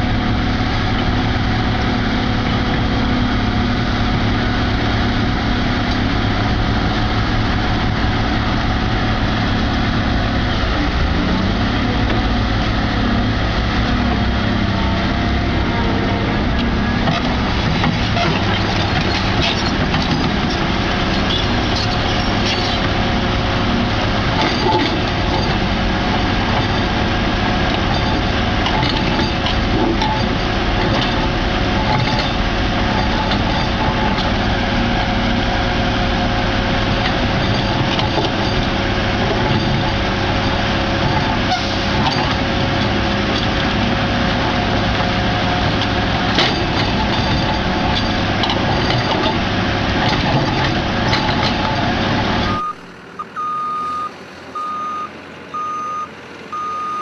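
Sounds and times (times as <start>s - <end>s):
heavy diesel machinery running: 0.0s - 57.0s
clanks and knocks: 17.0s - 23.0s, 27.6s - 34.4s, 37.0s - 43.7s, 45.6s - 52.0s.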